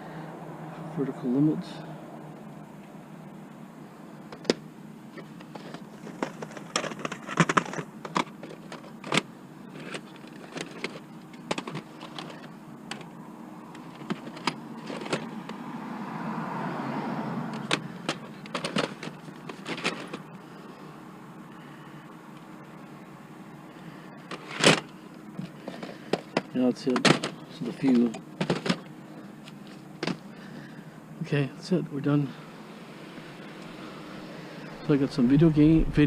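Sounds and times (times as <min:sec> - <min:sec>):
plastic cassettes clattering: 0:04.3 - 0:04.6, 0:05.2 - 0:13.1, 0:13.7 - 0:15.6, 0:17.4 - 0:20.8, 0:23.7 - 0:30.8.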